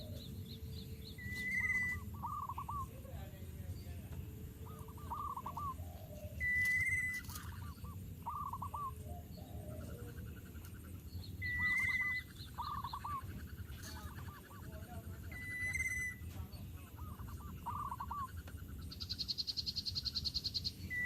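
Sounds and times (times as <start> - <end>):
faint rapid bird trill: 0.0 - 21.0
loud steady bird whistle: 1.2 - 2.9, 6.4 - 9.0, 11.4 - 13.2, 15.3 - 16.2, 19.2 - 21.0.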